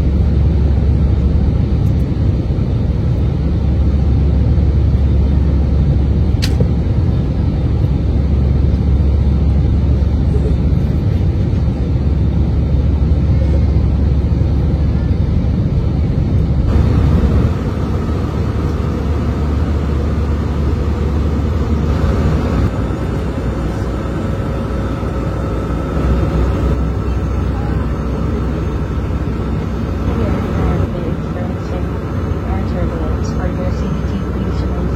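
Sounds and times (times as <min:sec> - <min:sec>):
airplane cabin engine rumble: 0:00.0 - 0:34.9
faint steady whine: 0:00.0 - 0:34.9
sharp click: 0:06.4 - 0:06.7.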